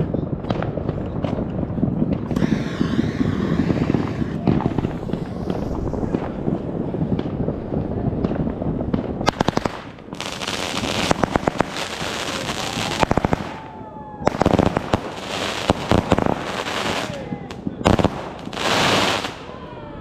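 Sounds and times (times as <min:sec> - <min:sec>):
fireworks bangs: 0:00.0 - 0:19.7
fireworks crackling: 0:00.0 - 0:19.7
falling whistles: 0:02.3 - 0:06.5.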